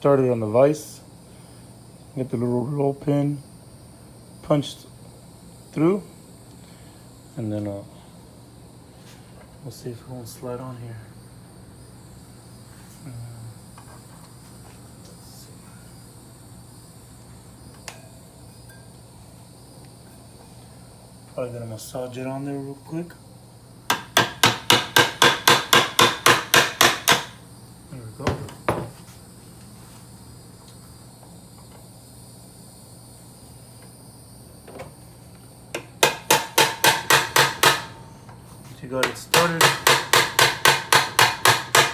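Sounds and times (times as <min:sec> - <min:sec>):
faint hum: 0:00.0 - 0:41.9
hammer tapping metal punch: 0:23.9 - 0:27.4, 0:35.8 - 0:38.0, 0:39.0 - 0:41.9.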